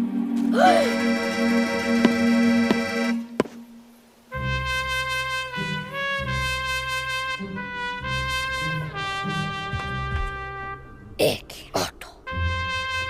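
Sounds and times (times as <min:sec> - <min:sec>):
brass band playing: 0:00.9 - 0:03.4, 0:04.3 - 0:10.9, 0:12.3 - 0:13.0.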